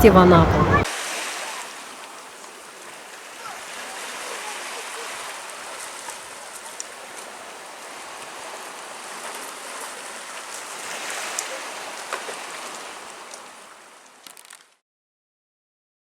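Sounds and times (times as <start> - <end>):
surf washing onto beach: 0.0 - 14.7
faint splashes: 0.4 - 14.8
faint clicks: 5.8 - 7.3, 13.3 - 14.8.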